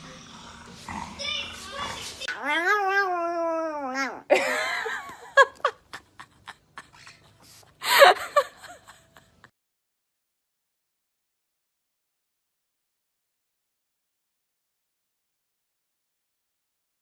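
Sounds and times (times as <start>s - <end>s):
dog whining: 2.2s - 4.3s
dog crying: 2.2s - 4.4s.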